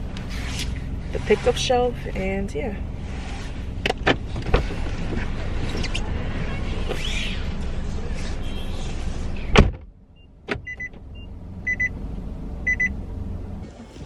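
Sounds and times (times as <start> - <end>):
car cabin noise: 0.0 - 14.0
car door shutting: 3.8 - 6.0, 9.4 - 11.0.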